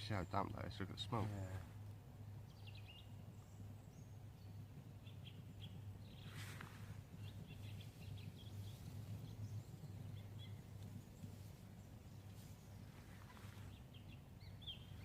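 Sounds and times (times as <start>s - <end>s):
low background hum: 0.0s - 15.0s
small birds chirping: 0.0s - 15.0s
brief rustle: 6.2s - 7.0s.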